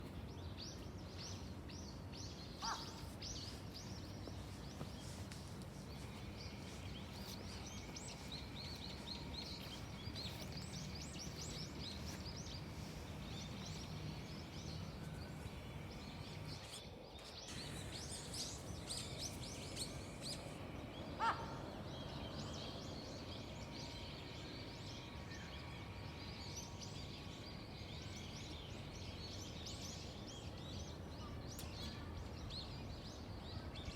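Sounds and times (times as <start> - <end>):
songbirds chirping: 0.0 - 33.9
loud falling bird calls: 21.2 - 21.9.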